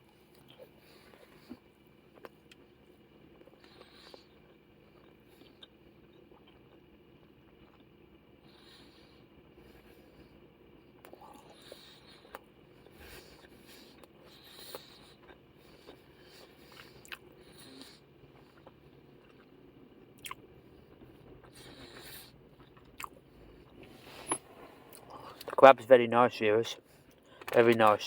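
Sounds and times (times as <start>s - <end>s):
person chewing: 0.3s - 7.9s, 10.8s - 25.6s.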